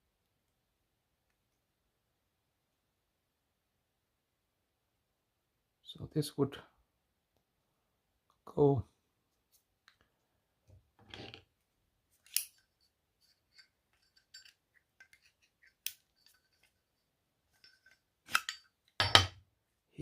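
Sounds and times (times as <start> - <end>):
lighter metal parts clicking: 12.2 - 12.6, 13.5 - 16.4.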